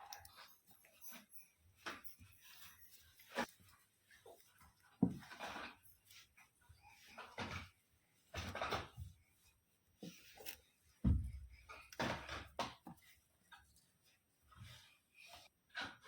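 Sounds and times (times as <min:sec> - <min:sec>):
objects knocking and rustling: 0:04.4 - 0:06.2, 0:10.0 - 0:13.1
heavy thud: 0:11.0 - 0:11.6.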